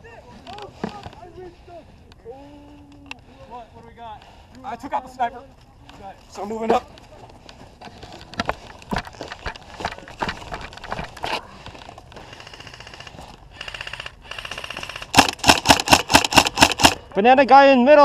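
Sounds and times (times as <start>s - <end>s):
airsoft guns firing: 12.4s - 17.1s.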